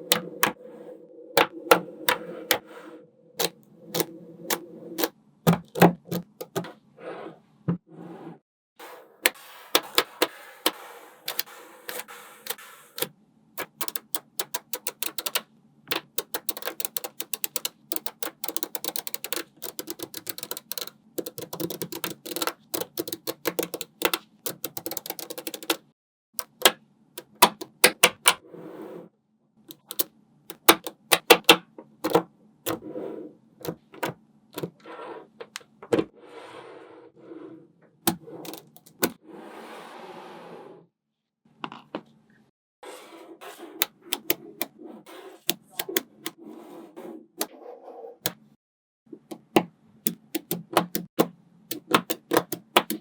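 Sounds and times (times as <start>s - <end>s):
magnetic balls clicking together: 13.6s - 25.8s.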